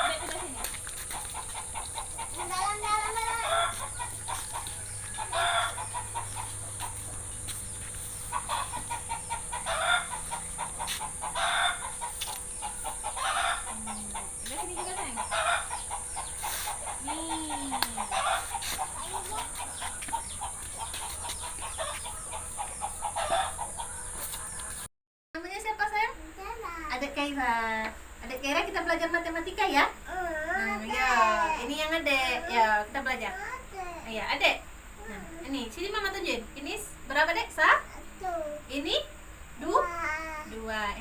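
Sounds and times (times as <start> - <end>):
chickens clucking: 0.0 - 24.9.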